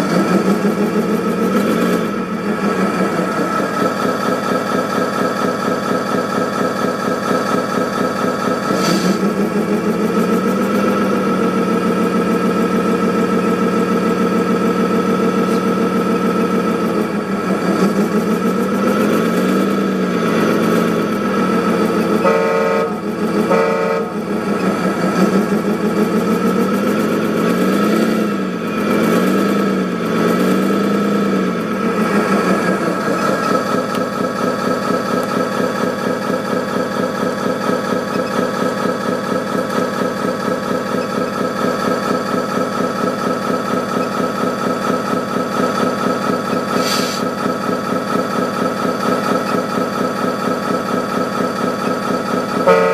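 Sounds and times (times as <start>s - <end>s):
diesel engine idling and revving: 0.0s - 52.9s
truck horn blasts: 22.2s - 24.3s, 52.6s - 52.9s.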